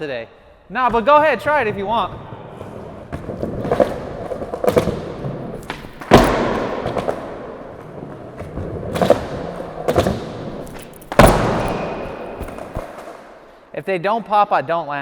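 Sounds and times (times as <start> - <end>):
skateboard knocks: 0.9 - 13.1
skateboard slamming on ground: 2.5 - 13.3.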